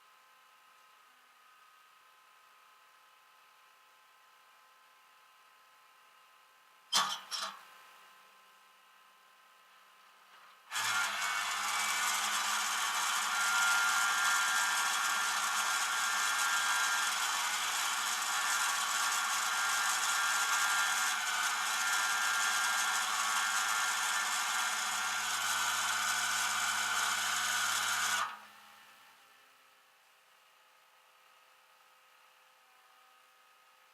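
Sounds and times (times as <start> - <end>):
small motor whirring: 10.7 - 28.5.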